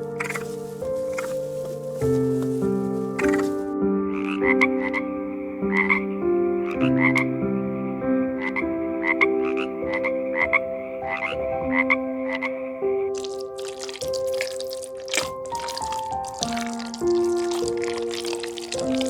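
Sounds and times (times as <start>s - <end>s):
frog croaking: 0.0s - 1.6s, 3.2s - 19.0s.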